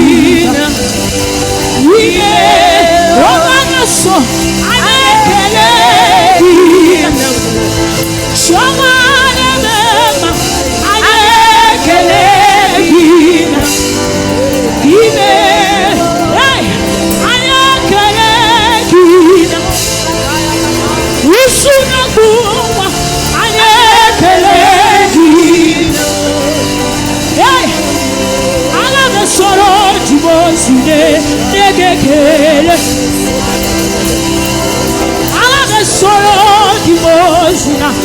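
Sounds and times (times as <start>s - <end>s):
instrumental backing: 0.0s - 38.0s
person singing gospel with vibrato: 0.0s - 38.0s.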